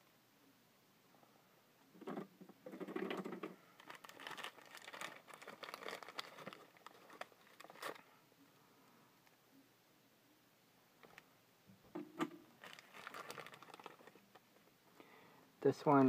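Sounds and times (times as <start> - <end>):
packing paper crinkling: 2.8 - 8.1, 11.0 - 11.2, 12.5 - 14.5.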